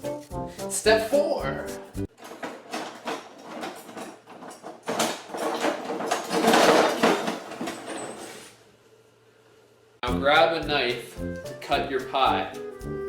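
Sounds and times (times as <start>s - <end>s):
dishes clattering: 2.1s - 8.4s.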